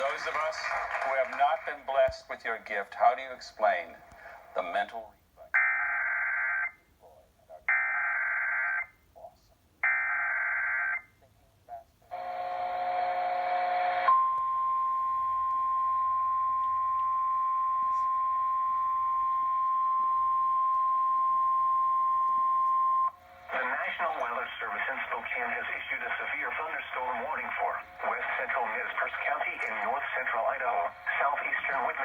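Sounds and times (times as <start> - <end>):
steady warning alarm tone: 12.2 - 32.0.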